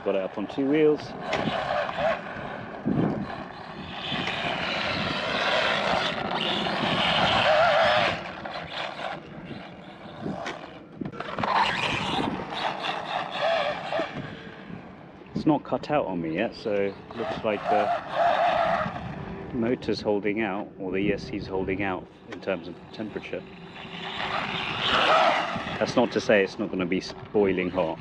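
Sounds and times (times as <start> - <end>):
toy truck electric motor whining: 1.3 - 14.6, 22.9 - 26.2.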